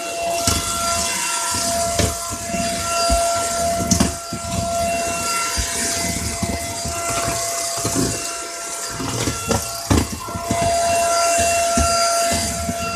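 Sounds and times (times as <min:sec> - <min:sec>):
vacuum motor whine: 0:00.0 - 0:12.9
knocks and clicks of debris: 0:08.9 - 0:12.9.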